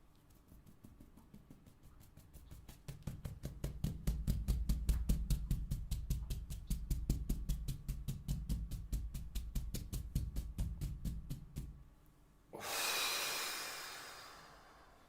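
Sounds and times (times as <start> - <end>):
fingertips tapping on chest: 0.2 - 11.9.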